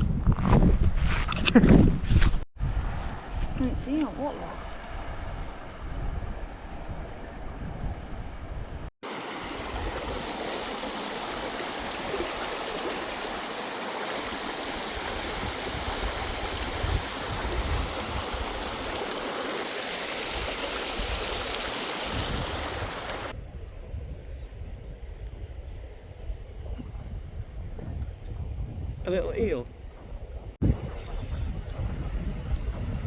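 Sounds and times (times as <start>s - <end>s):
river water rushing over stones: 9.0s - 23.3s
quiet outdoor background: 23.3s - 33.0s.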